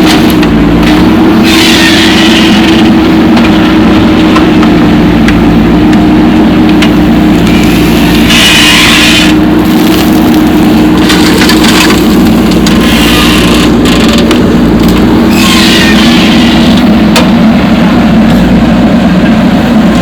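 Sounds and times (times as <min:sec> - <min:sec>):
heavy diesel engine running: 0:00.0 - 0:20.0
rough grating in sand: 0:07.5 - 0:14.2, 0:14.8 - 0:16.8.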